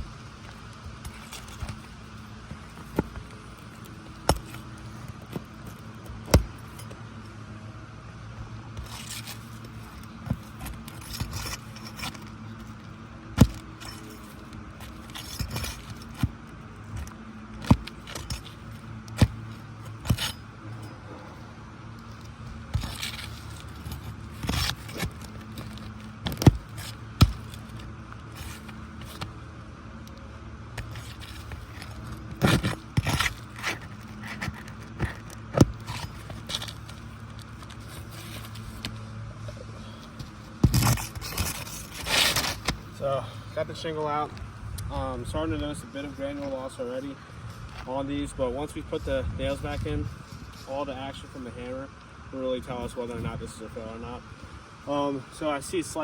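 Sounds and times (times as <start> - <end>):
metal tool prying under shingles: 0.0 - 7.0, 8.8 - 21.0, 21.9 - 29.3, 30.7 - 39.0, 39.8 - 43.0.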